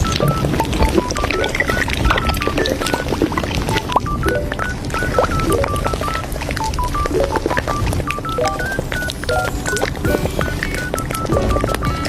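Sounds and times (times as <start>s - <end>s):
background music with high notes: 8.3s - 12.0s.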